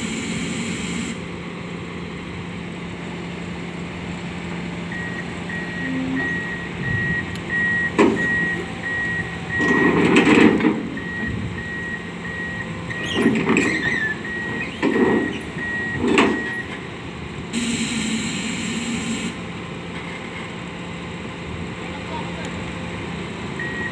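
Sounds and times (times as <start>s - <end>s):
engine hum: 0.0s - 23.9s
reverse alarm beeping: 4.9s - 9.8s, 11.0s - 13.1s, 14.1s - 16.7s, 17.6s - 19.4s, 23.6s - 23.9s.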